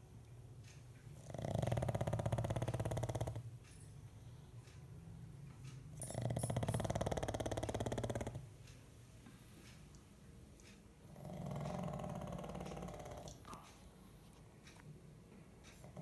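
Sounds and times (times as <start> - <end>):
pet snoring: 1.2 - 3.4, 6.1 - 8.5, 11.0 - 13.5
quiet breathing: 1.2 - 4.9, 11.0 - 14.6.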